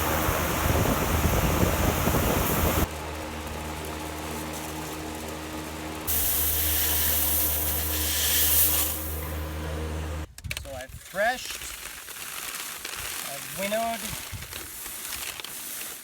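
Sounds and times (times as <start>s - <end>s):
loud rushing hiss: 0.0s - 10.3s
mechanical hum: 0.0s - 10.3s.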